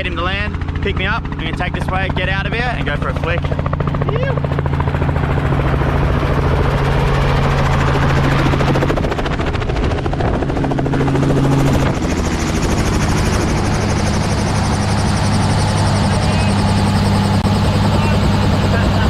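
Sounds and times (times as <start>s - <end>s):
helicopter engine hum: 0.0s - 19.0s
helicopter rotor chop: 0.0s - 19.0s.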